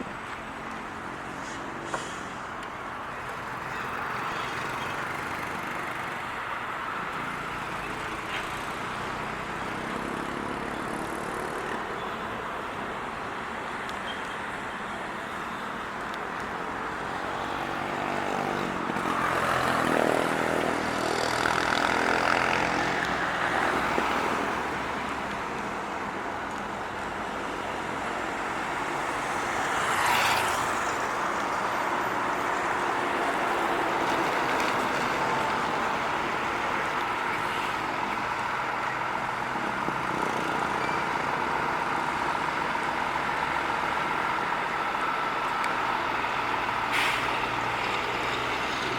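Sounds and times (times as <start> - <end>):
heavy truck engines: 0.0 - 48.9
road traffic: 0.0 - 48.9
short sharp hiss: 1.3 - 2.4, 46.9 - 47.4.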